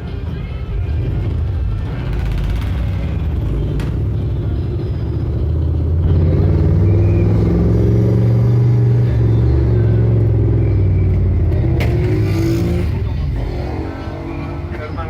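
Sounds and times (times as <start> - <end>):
engine rumble: 0.0 - 15.0.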